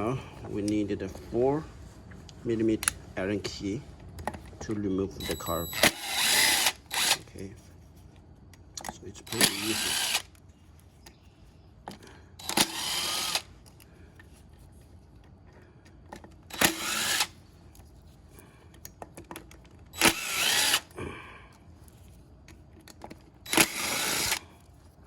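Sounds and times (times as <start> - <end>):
electric screwdriver whirring: 5.2 - 7.3, 9.3 - 10.4, 12.4 - 13.5, 16.5 - 17.4, 19.9 - 20.9, 23.4 - 24.4.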